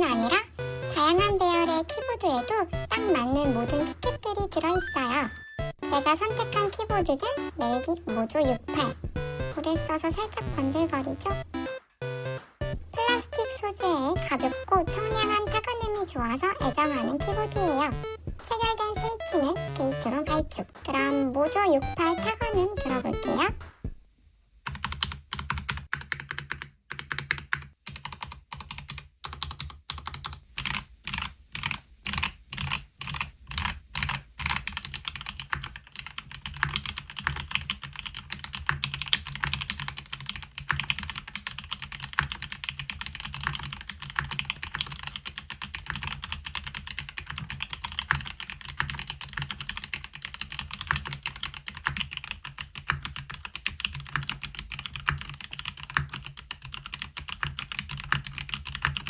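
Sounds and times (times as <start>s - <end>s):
mechanical keyboard typing: 0.0s - 23.6s, 24.7s - 59.0s.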